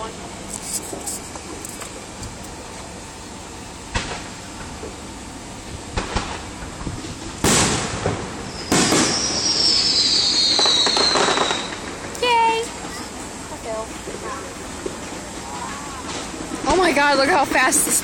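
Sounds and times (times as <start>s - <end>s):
fireworks bangs: 3.8s - 5.1s, 5.7s - 13.1s
high falling whistle: 8.4s - 11.8s.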